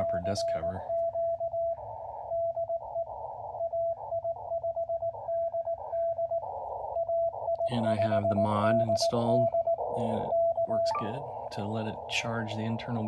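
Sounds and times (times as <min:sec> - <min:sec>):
radio band noise hiss: 0:00.0 - 0:00.8, 0:07.7 - 0:13.0
morse code tone: 0:07.8 - 0:11.7.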